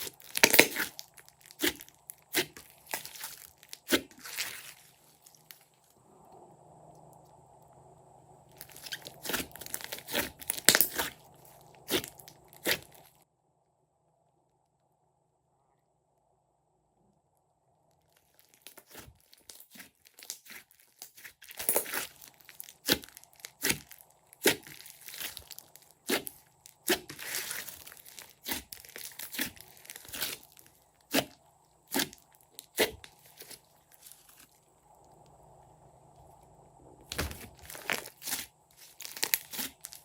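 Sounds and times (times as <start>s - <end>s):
slime clicking and popping: 0.0s - 1.0s
slime crackling squelch: 0.0s - 7.8s, 8.4s - 13.2s, 18.0s - 40.0s.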